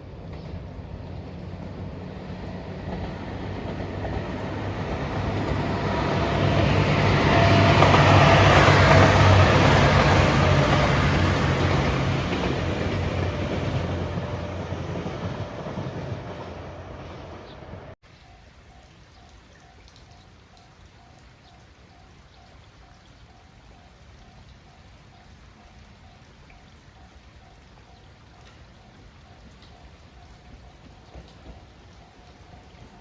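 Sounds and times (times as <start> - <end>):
train passing: 0.0 - 18.4, 28.7 - 33.0.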